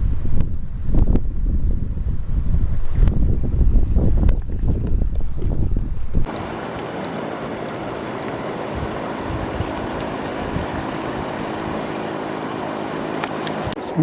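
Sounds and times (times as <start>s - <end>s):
river water flowing: 6.2s - 14.0s.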